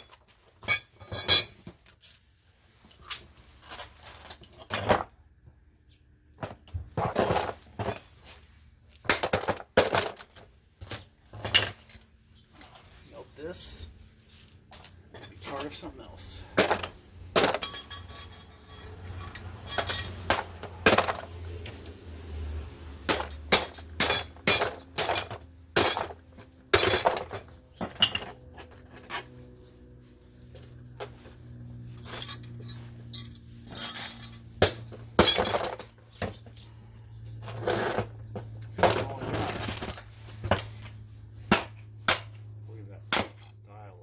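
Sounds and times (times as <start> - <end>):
hand tools clinking on metal: 0.0 - 2.3, 9.0 - 22.0, 23.0 - 29.4, 30.6 - 36.6.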